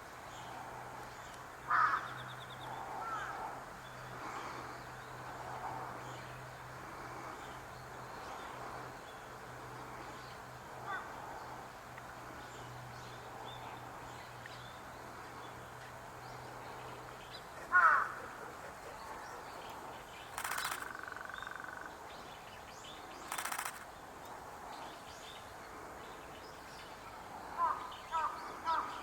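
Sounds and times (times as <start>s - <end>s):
bird calls: 17.3s - 22.1s, 23.0s - 23.9s.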